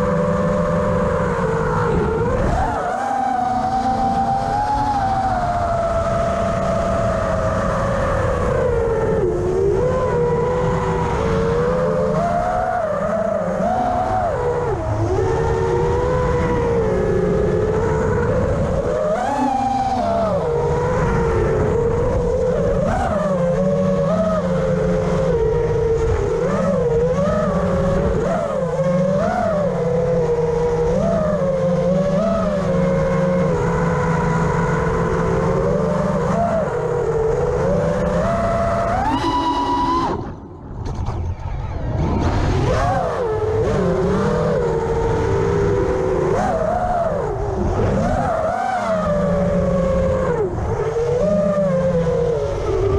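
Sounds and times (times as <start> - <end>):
quadcopter propellers whining: 0.0 - 52.9
low rushing noise: 37.5 - 45.8.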